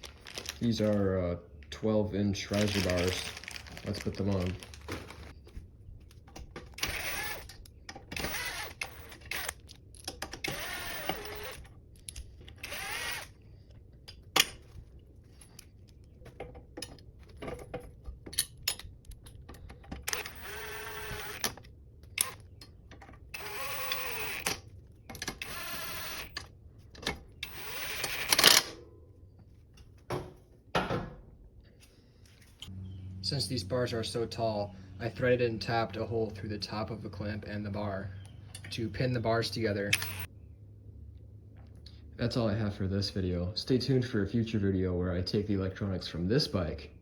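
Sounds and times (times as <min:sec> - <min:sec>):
power tool bursts: 0:12.6 - 0:13.3.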